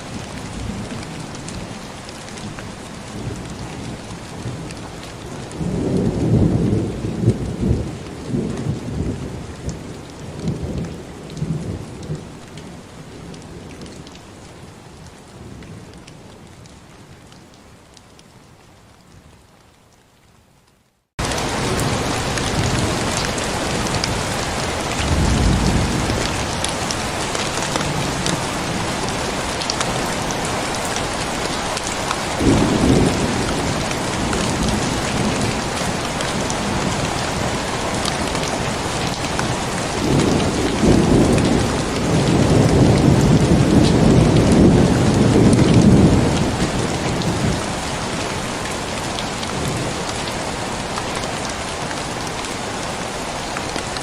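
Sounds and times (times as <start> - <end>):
heavy rain: 0.0 - 54.0
thunder rumbling: 21.2 - 50.0.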